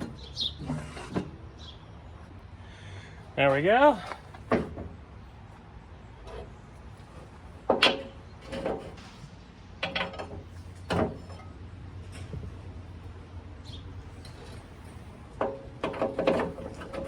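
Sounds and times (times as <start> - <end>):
metal clanks and knocks: 4.4 - 5.0, 7.1 - 12.6, 14.2 - 17.0.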